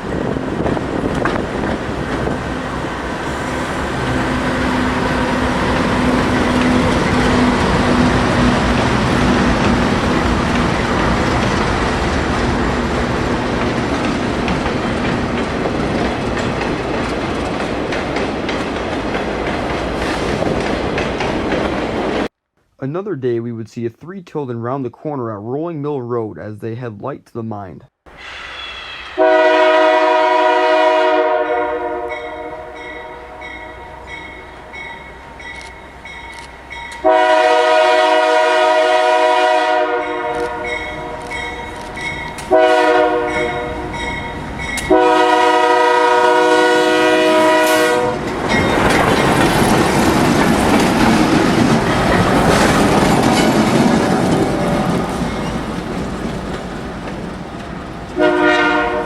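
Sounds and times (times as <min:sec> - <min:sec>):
locomotive engines passing: 0:00.0 - 0:22.3, 0:40.4 - 0:59.0
wheels on rails: 0:00.0 - 0:22.3, 0:48.2 - 0:58.2
locomotive air horn blasts: 0:29.2 - 0:33.5, 0:37.0 - 0:41.2, 0:42.5 - 0:43.9, 0:44.9 - 0:48.2, 0:58.2 - 0:59.0.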